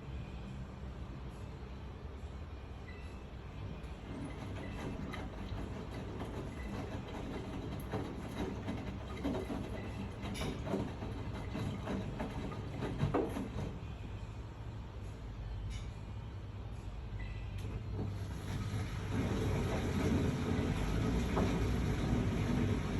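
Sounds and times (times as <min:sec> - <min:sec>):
washing machine drum rumbling: 0:03.8 - 0:13.9, 0:17.6 - 0:22.9
washing machine knocks and clatters: 0:04.0 - 0:13.9, 0:17.6 - 0:22.9.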